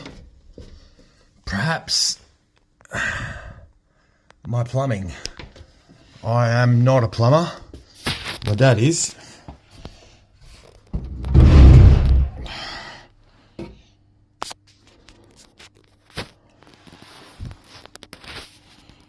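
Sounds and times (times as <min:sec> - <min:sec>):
sharp knocks: 0:11.0 - 0:12.4
loud scraping rustle: 0:11.1 - 0:12.4.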